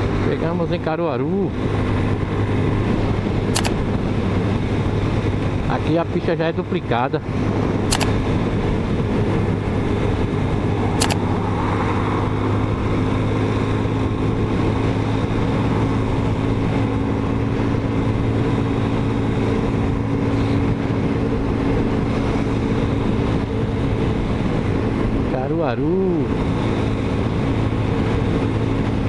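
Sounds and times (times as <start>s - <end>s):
motorcycle engine cruising: 0.0s - 29.0s
wind and road noise: 0.0s - 29.0s
sharp click: 3.5s - 3.8s, 7.9s - 8.2s, 10.9s - 11.4s.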